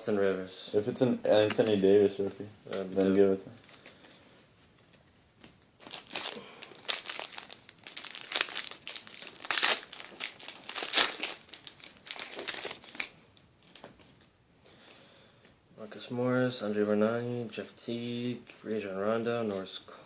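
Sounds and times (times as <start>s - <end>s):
card pack wrapper crinkling: 5.8s - 14.3s.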